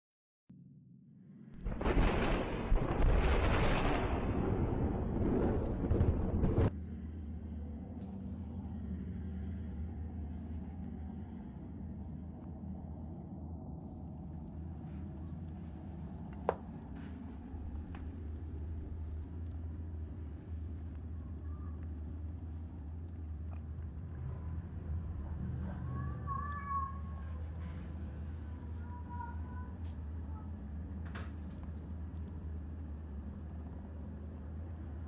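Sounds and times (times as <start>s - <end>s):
steady low hum: 0.6s - 35.0s
cat meowing: 25.6s - 27.4s.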